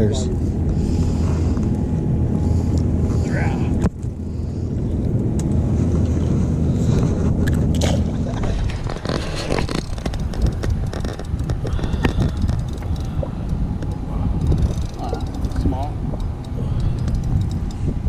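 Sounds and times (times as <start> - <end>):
boat motor humming: 0.0 - 18.0
clicks and scrapes on boat: 5.8 - 17.9.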